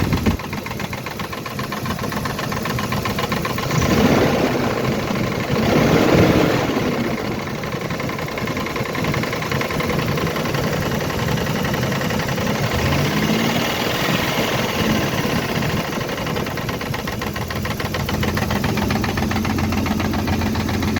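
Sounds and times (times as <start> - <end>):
car engine knocking and revving: 0.0 - 20.9.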